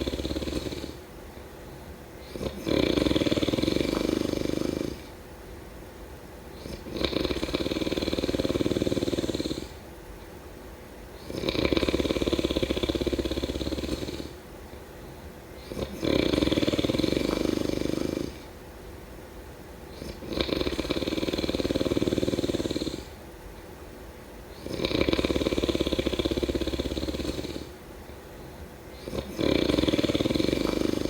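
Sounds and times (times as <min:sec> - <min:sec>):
person snoring: 0:00.0 - 0:01.0, 0:02.2 - 0:05.1, 0:06.6 - 0:09.8, 0:11.2 - 0:14.4, 0:15.6 - 0:18.5, 0:19.9 - 0:23.2, 0:24.6 - 0:27.8, 0:28.9 - 0:31.0.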